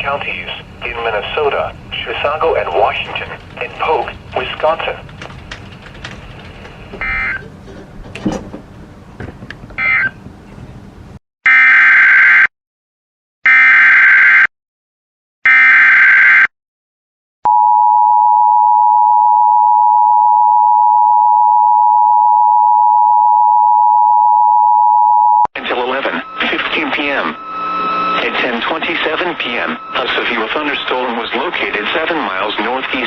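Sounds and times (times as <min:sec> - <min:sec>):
two-tone attention signal: 0:17.5 - 0:31.1
data tone bursts: 0:22.3 - 0:31.8.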